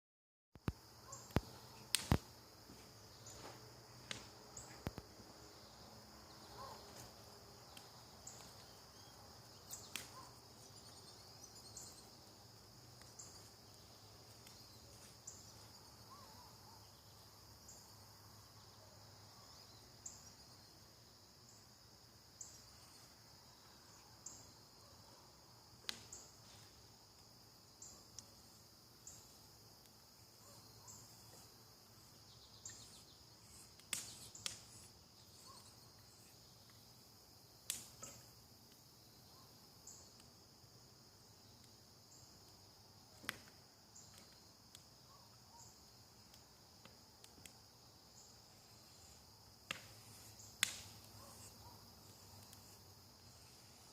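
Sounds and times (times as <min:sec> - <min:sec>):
campfire popping and crackling: 0:00.6 - 0:05.2, 0:06.8 - 0:11.4, 0:12.0 - 0:15.7, 0:33.5 - 0:35.0, 0:37.6 - 0:38.4, 0:49.6 - 0:51.2
night insects trilling: 0:00.6 - 0:53.9.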